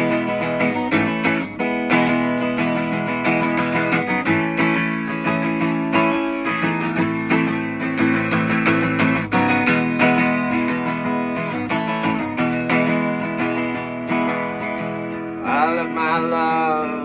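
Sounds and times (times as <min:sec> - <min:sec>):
acoustic guitar strumming: 0:00.0 - 0:17.0
person singing: 0:15.3 - 0:17.0.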